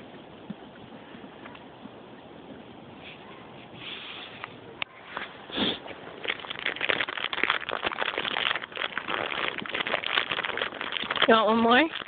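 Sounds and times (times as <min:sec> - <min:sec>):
wrappers crinkling: 0:05.1 - 0:12.0
breathy puff: 0:05.4 - 0:06.0
horse munching hard candy: 0:05.5 - 0:12.0.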